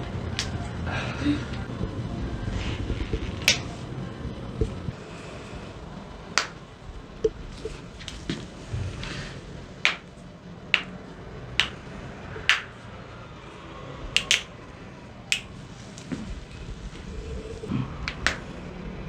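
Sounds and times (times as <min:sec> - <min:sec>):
joints cracking: 0:03.4 - 0:03.8, 0:06.4 - 0:08.4, 0:11.6 - 0:12.8, 0:14.1 - 0:14.6, 0:18.0 - 0:18.5.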